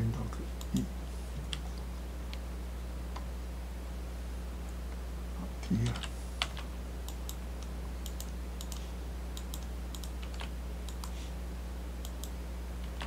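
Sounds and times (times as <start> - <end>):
low electrical hum: 0.0 - 13.0
keyboard and mouse clicking: 5.8 - 8.8, 9.4 - 11.2, 12.0 - 13.0.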